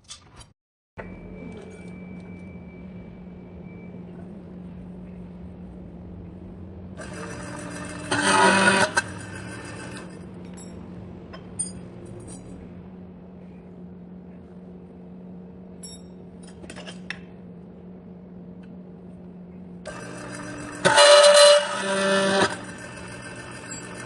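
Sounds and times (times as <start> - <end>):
steady low hum: 1.0 - 24.0
loud burst of workshop noise: 7.0 - 10.4, 19.8 - 24.0
steel rods clinking: 10.4 - 12.6.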